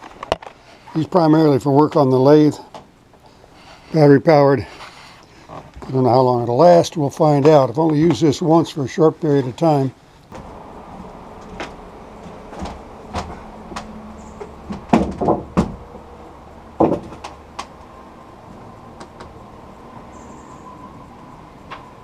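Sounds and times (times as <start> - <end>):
faint steady whine: 0.0 - 22.0
helmet knocks and clatter: 11.4 - 15.8.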